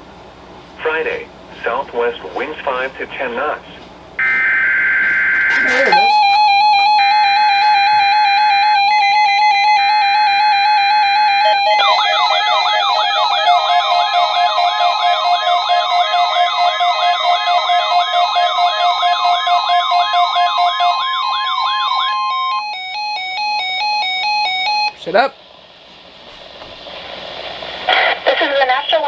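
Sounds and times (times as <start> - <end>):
weather alert radio alarms: 4.2 - 25.0.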